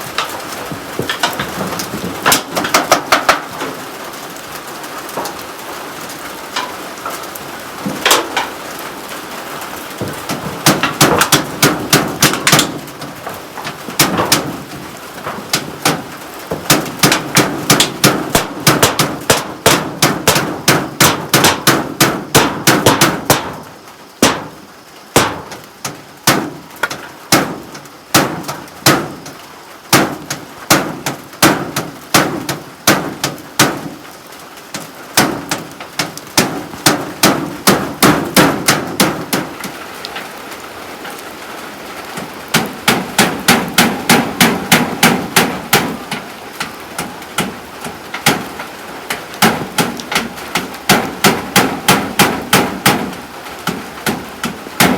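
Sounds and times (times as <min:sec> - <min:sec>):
hammer driving nails: 0:00.1 - 0:03.8, 0:10.0 - 0:23.6, 0:42.5 - 0:46.2, 0:48.1 - 0:48.5, 0:49.4 - 0:54.9.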